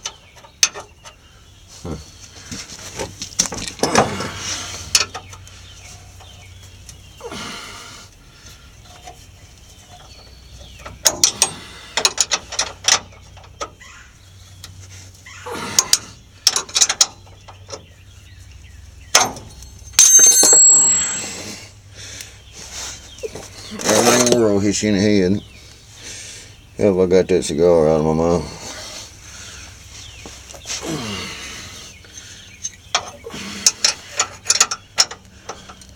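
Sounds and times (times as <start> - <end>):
metallic clanks of tools: 9.9 - 13.7, 19.1 - 21.6.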